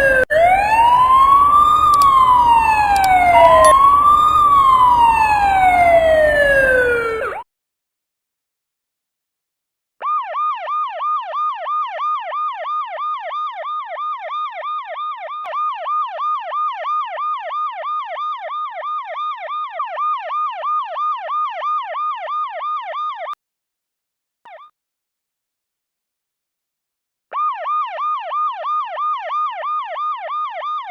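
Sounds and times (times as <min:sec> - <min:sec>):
siren chirp: 0:00.0 - 0:07.4
siren in yelp mode: 0:00.0 - 0:07.5, 0:10.0 - 0:23.3, 0:27.3 - 0:30.9.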